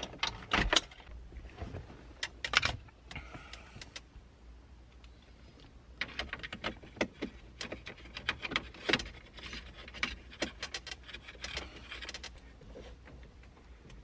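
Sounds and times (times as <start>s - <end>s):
plastic clicks and rattles: 6.0s - 12.4s.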